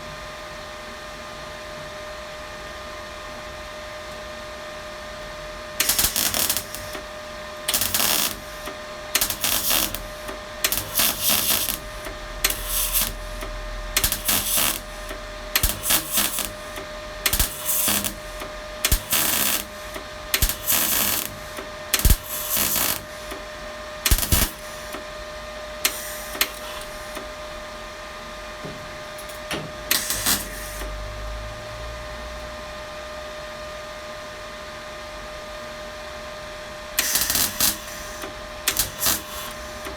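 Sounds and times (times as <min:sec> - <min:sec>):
steady hum: 0:05.4 - 0:31.3
welder crackling bursts: 0:05.8 - 0:25.0, 0:25.8 - 0:27.3, 0:29.2 - 0:31.0, 0:37.0 - 0:39.9.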